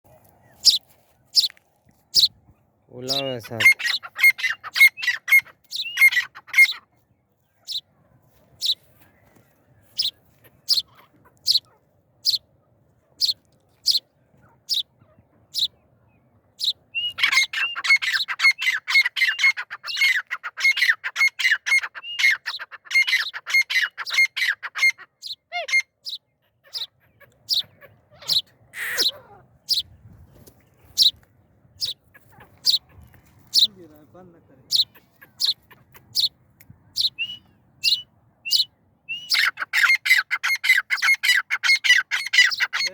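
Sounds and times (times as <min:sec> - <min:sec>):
birds chirping: 0:00.0 - 0:42.9
birds rapid chattering: 0:00.5 - 0:00.8, 0:03.0 - 0:06.8, 0:08.6 - 0:12.4, 0:13.2 - 0:14.0, 0:14.7 - 0:15.8, 0:26.0 - 0:31.2, 0:31.8 - 0:42.9.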